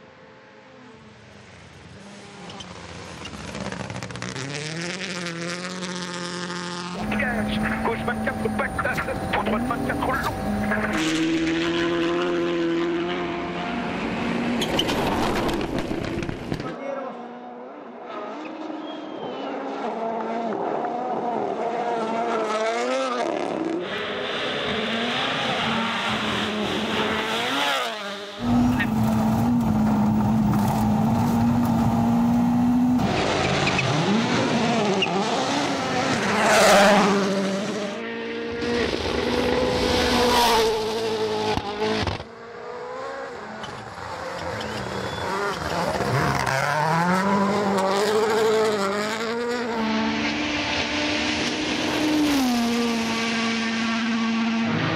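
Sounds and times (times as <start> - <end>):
rally car engines revving: 0.2 - 54.9
gear changes: 6.1 - 12.2, 26.0 - 36.3.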